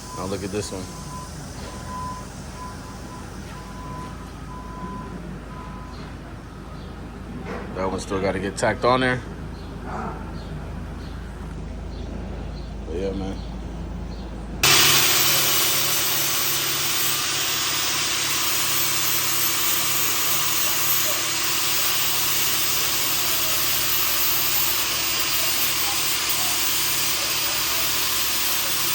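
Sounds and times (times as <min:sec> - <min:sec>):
welding hiss: 0:00.0 - 0:04.3, 0:14.6 - 0:28.9.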